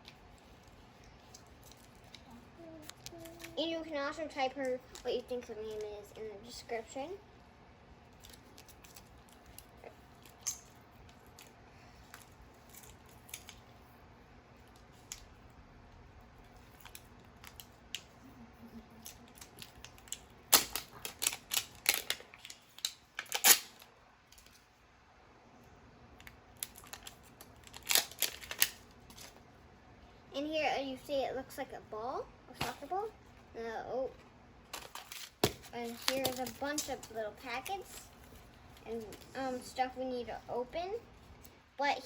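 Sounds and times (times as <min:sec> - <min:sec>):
plastic packaging clicks and crinkles: 0:08.1 - 0:13.7, 0:16.5 - 0:18.2, 0:18.9 - 0:24.6, 0:26.2 - 0:29.4, 0:34.7 - 0:39.3
packaging crackling and tearing: 0:19.0 - 0:24.6, 0:26.6 - 0:29.4, 0:34.7 - 0:38.2.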